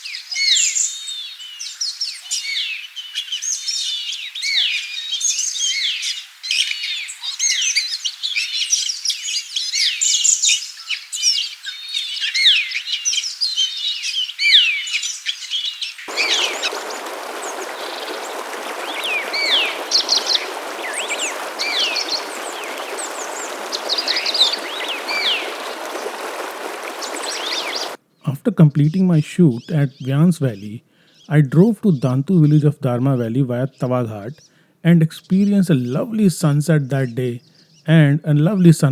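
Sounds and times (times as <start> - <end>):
songbirds chirping: 16.1 - 38.9.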